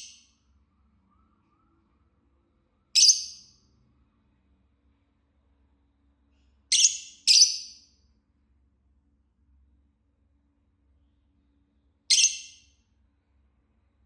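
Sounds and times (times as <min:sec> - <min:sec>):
lovebird shrill calls: 0:03.0 - 0:03.5.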